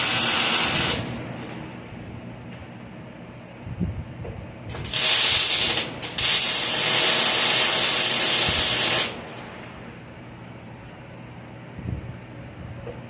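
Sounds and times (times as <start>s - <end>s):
pressurised hiss: 0.0s - 1.2s, 4.7s - 9.2s.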